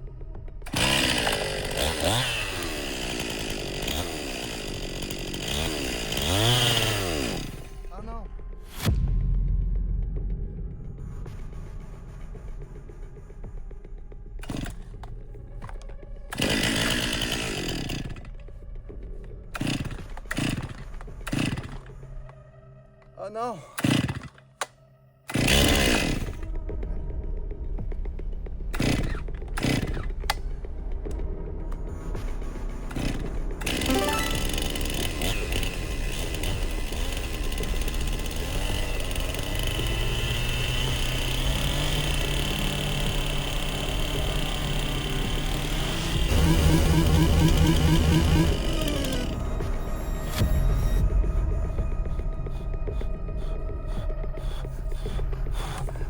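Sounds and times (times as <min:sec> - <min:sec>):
chainsaw engine running: 0:00.6 - 0:08.0, 0:14.4 - 0:22.4, 0:23.8 - 0:24.7, 0:25.3 - 0:26.5, 0:28.7 - 0:30.5, 0:32.9 - 0:50.5, 0:52.5 - 0:56.0.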